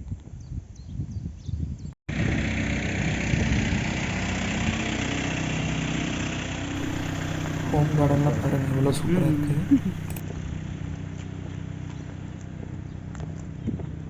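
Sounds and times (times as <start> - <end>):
engine running with low drone: 6.8 - 10.2.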